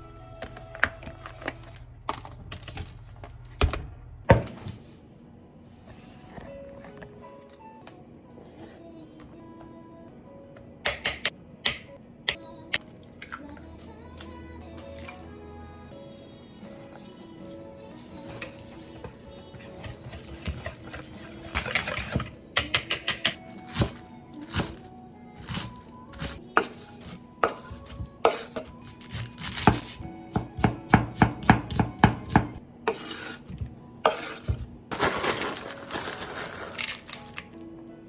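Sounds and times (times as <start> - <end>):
knife chopping on cutting board: 29.4 - 33.3.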